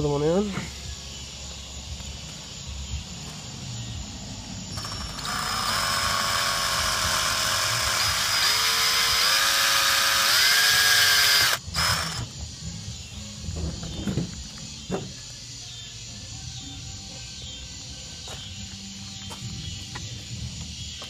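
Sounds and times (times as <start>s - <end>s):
power drill motor whine: 4.7s - 12.4s.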